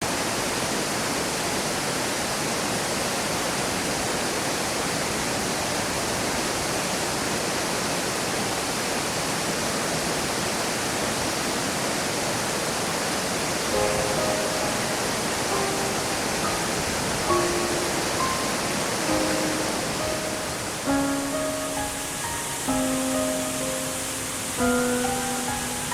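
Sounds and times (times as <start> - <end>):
stream and waterfall rushing: 0.0 - 25.9
soft sustained music notes: 13.7 - 25.9.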